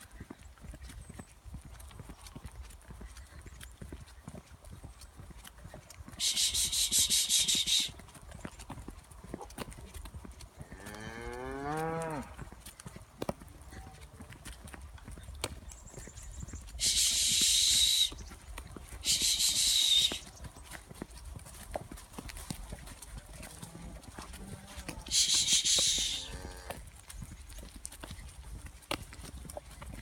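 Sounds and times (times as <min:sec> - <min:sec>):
cow mooing: 0:10.8 - 0:12.4, 0:24.4 - 0:26.8.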